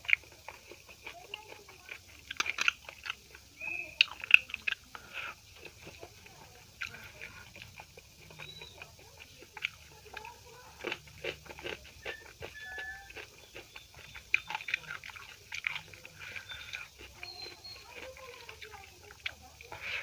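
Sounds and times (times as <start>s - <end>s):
person chewing food: 0.0s - 20.0s
wet mouth clicks and smacks: 1.9s - 5.7s, 7.7s - 10.2s, 10.8s - 17.5s.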